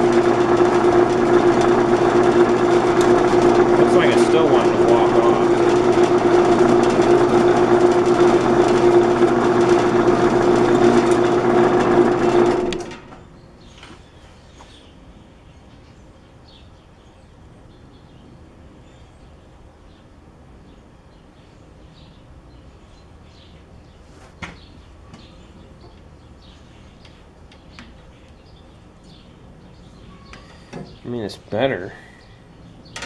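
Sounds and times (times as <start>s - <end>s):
band saw humming: 0.0s - 13.2s.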